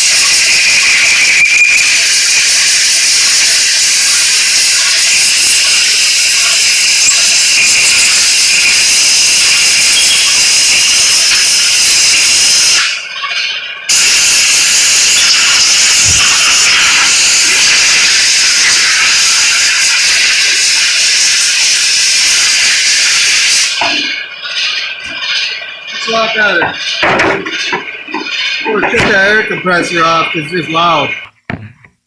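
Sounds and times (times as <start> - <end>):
compressed air hissing from blow gun: 0.0 - 13.0, 13.9 - 24.2.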